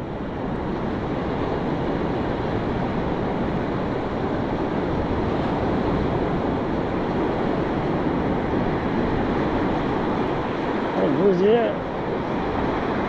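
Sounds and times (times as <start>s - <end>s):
surf rushing: 0.0s - 13.0s
wind: 0.0s - 13.0s.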